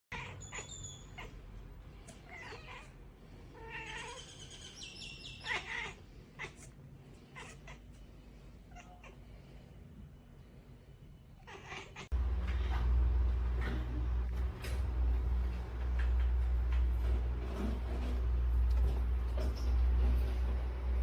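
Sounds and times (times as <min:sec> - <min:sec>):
cat meowing: 0:00.1 - 0:01.4, 0:02.1 - 0:03.0, 0:05.3 - 0:06.7, 0:08.7 - 0:09.2, 0:11.4 - 0:12.1.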